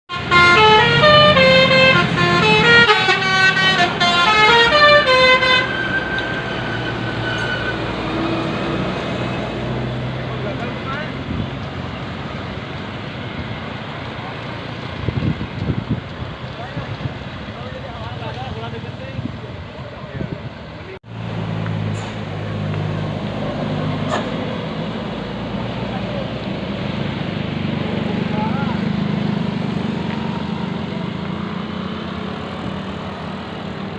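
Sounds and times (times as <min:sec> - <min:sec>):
musical bus air horn: 0:00.1 - 0:06.2
bus engine hum: 0:00.1 - 0:18.5, 0:19.2 - 0:33.9
street noise: 0:00.1 - 0:33.9.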